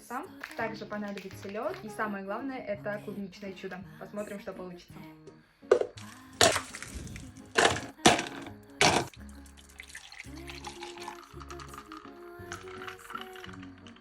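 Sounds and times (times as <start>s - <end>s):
background music: 0.0s - 14.0s
ice cubes clinking into glass: 5.7s - 14.0s.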